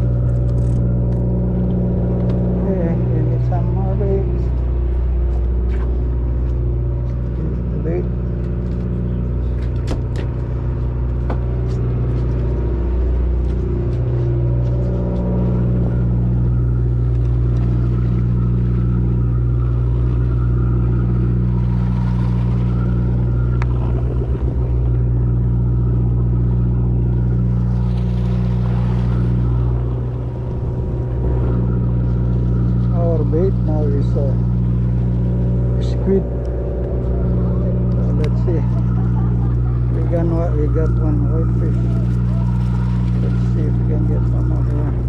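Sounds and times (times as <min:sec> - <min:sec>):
boat engine droning: 0:00.0 - 0:45.0.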